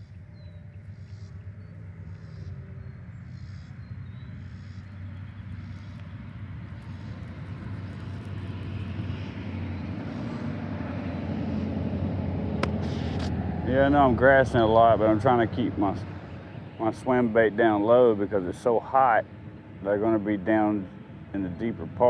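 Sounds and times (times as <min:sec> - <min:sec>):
engine drone: 0:00.0 - 0:22.0.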